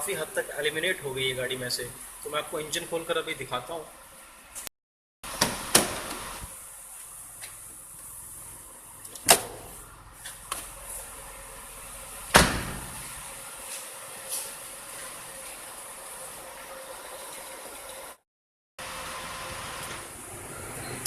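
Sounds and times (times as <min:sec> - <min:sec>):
car door and bonnet clunks: 0:12.3 - 0:13.2.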